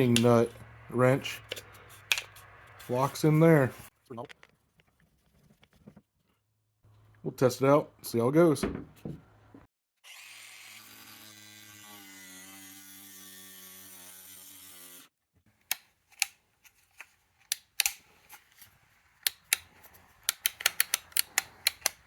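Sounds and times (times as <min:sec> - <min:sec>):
sharp mechanical clicks: 0:19.2 - 0:22.0.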